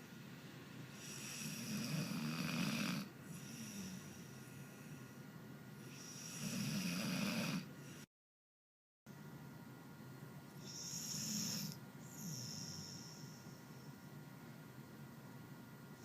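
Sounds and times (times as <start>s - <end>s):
dog snoring: 0.9s - 5.0s, 5.8s - 8.1s, 10.6s - 13.5s.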